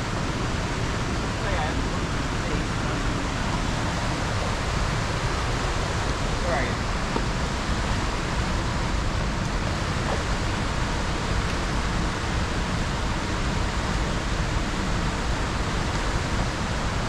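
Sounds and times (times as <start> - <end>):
fast river water rushing: 0.0 - 17.0.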